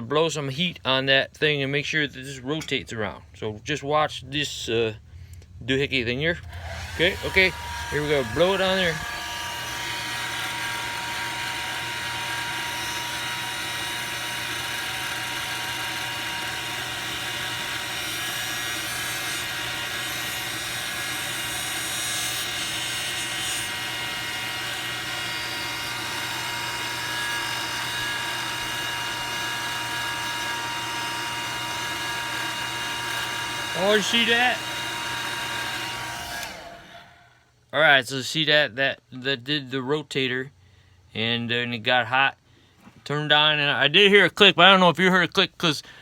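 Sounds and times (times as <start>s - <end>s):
hair dryer running: 6.4s - 37.2s.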